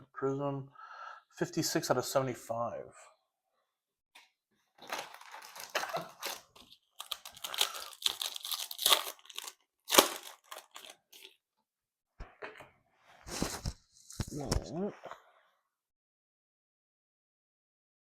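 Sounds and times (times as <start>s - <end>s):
foil wrapper tearing and crinkling: 4.8s - 11.4s.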